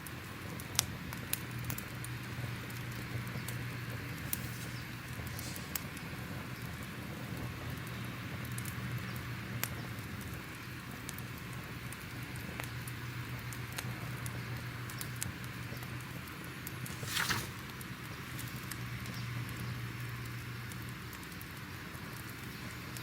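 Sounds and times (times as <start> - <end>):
soft hiss: 3.9 - 6.1, 16.7 - 19.6
fire crackling and popping: 9.6 - 19.6.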